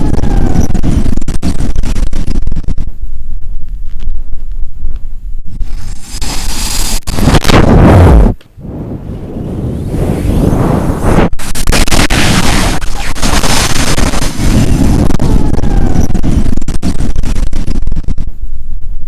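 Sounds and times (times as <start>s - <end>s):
crackling pops: 0.0s - 3.0s, 3.6s - 8.6s, 10.4s - 18.4s
strong wind on microphone: 0.0s - 19.0s.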